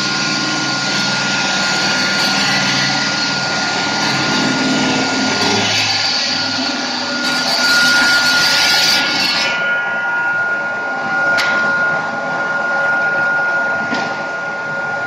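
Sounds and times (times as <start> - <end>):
stone-cutting disc whining: 0.0 - 10.6
loud mechanical noise: 0.0 - 15.0.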